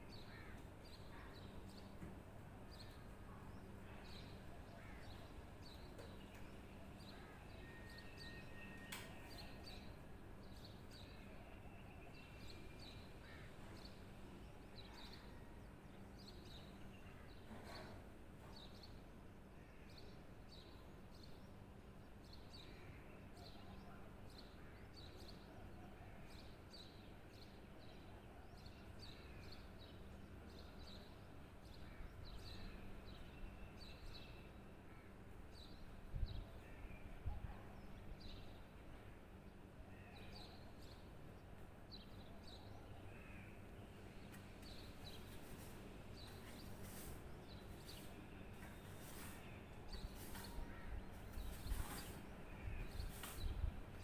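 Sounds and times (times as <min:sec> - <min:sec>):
birds chirping faintly: 0:37.8 - 0:54.0.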